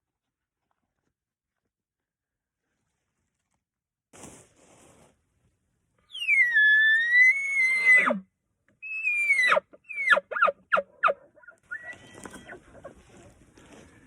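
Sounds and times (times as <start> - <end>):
elk bugling whistle: 6.1 - 8.2, 8.8 - 12.9.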